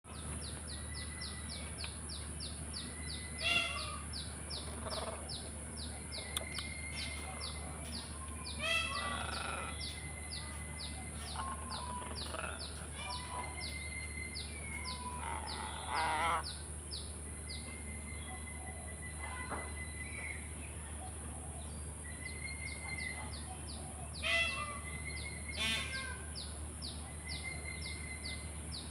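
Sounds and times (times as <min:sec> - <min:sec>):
macaw squawking: 0:03.4 - 0:04.1, 0:24.2 - 0:24.8, 0:25.5 - 0:26.2.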